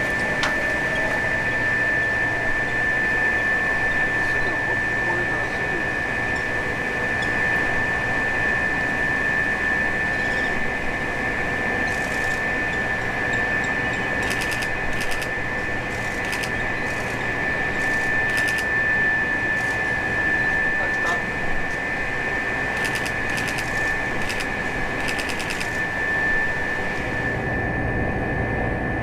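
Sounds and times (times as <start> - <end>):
high-pitched whine: 0.0 - 29.0
ventilation machinery drone: 0.0 - 29.0
rapid high ticking: 14.0 - 18.7, 22.7 - 25.9.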